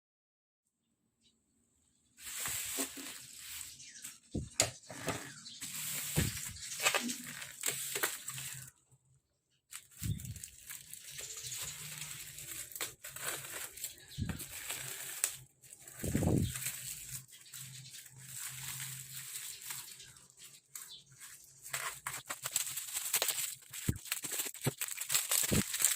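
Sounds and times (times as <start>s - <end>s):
packaging rustling and clicking: 5.3s - 8.7s, 9.7s - 25.9s.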